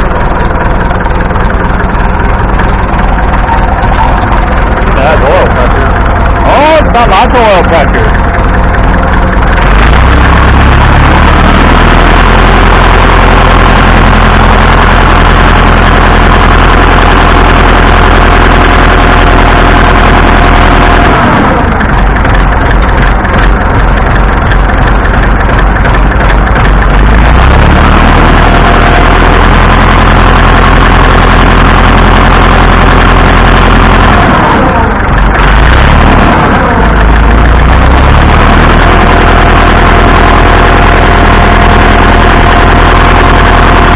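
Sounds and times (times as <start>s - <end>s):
tractor engine knocking: 0.0s - 43.9s.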